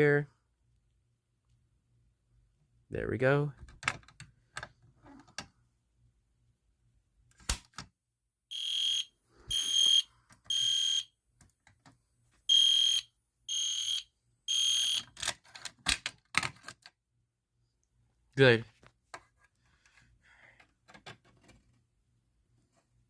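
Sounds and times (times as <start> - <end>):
fire alarm horn beeps: 8.5 - 11.1, 12.5 - 15.0.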